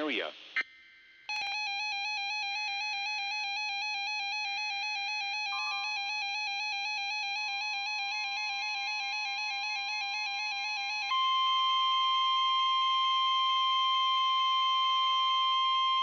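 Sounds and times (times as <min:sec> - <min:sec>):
rapidly pulsing high beeping alarm: 0:01.3 - 0:12.5
faint steady alert tone: 0:05.5 - 0:06.1.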